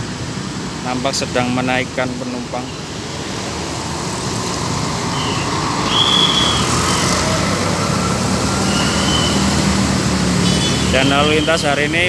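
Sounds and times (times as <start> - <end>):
bus engine running: 0.0 - 12.0
road traffic: 0.0 - 12.0
high-pitched whistle tones: 5.1 - 7.3, 8.6 - 9.5.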